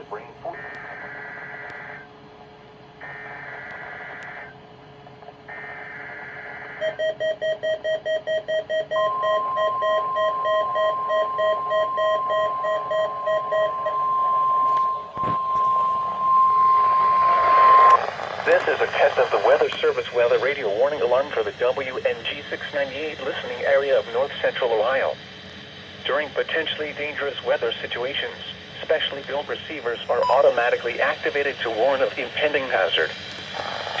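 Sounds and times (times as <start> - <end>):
steady warning alarm tone: 0.0 - 2.2, 2.9 - 4.5, 5.5 - 25.2, 30.1 - 33.2
rapid electronic beeping: 0.6 - 2.1, 5.5 - 19.6, 30.1 - 30.6.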